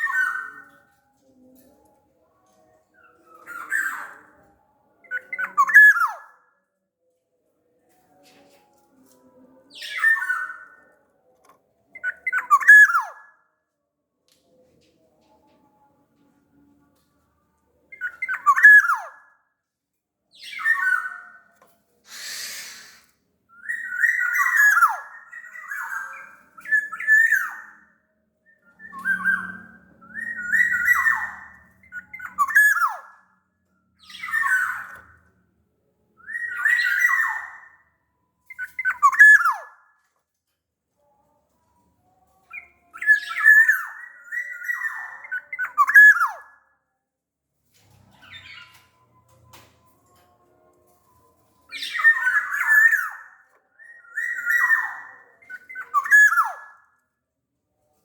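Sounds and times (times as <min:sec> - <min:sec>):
harsh hissy bird note: 0:22.1 - 0:23.1
bird singing fluty whistles: 0:22.1 - 0:27.7, 0:28.6 - 0:33.2, 0:51.7 - 0:56.8.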